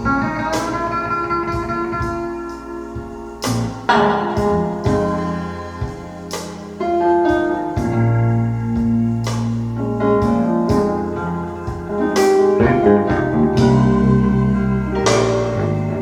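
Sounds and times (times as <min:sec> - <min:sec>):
slow blues over speakers: 0:00.0 - 0:16.0.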